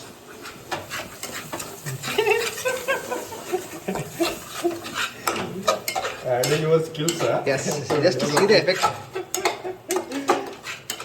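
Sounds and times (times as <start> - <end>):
cooking utensils clinking: 0.0 - 11.0
person laughing: 1.9 - 4.8, 9.6 - 10.5.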